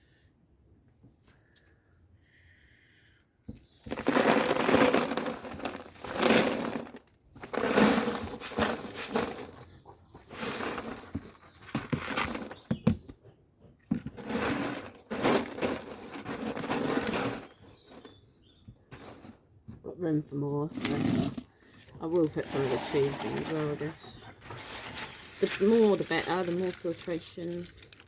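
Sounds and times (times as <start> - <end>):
plastic pieces rattling: 3.8 - 9.7, 14.2 - 18.1, 22.2 - 28.0.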